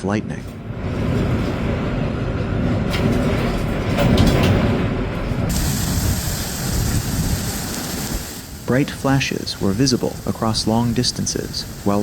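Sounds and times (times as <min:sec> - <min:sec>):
heavy rain hiss: 0:05.5 - 0:12.0.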